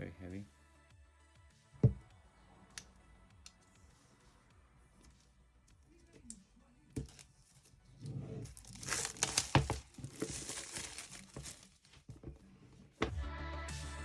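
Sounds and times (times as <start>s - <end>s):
background music: 0.0s - 14.0s
packaging tearing and crinkling: 8.5s - 12.0s.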